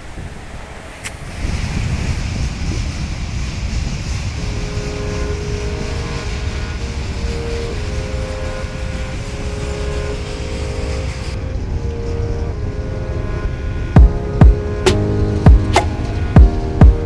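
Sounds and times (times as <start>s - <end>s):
wind buffeting microphone: 0.0s - 17.0s
faint melody of held notes: 4.4s - 17.0s.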